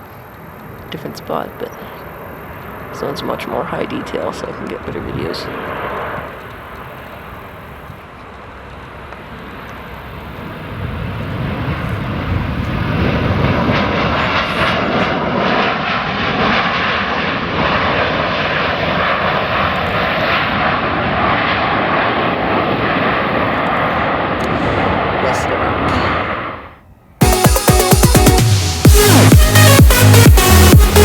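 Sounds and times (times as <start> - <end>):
faint steady whine: 0.0 - 16.1
jet engines on landing approach: 0.0 - 30.5.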